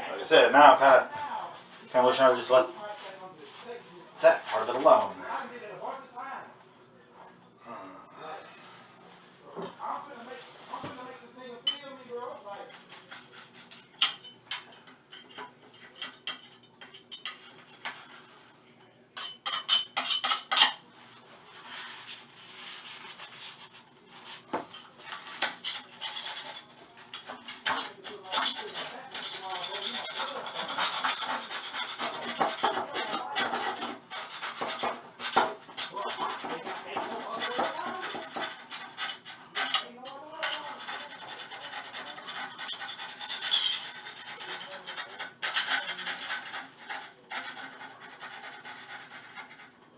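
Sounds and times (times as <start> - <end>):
metal scraping: 10.7 - 18.4, 19.2 - 49.8.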